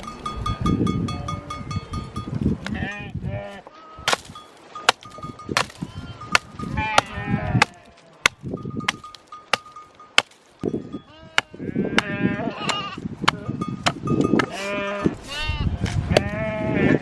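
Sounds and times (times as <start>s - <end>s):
sheep bleating: 5.8s - 8.2s, 11.0s - 13.6s, 14.5s - 17.0s.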